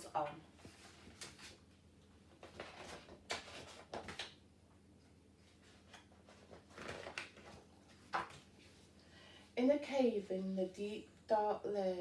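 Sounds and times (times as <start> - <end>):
paper pages turning: 0.6 - 1.6, 2.3 - 4.4, 5.6 - 8.4.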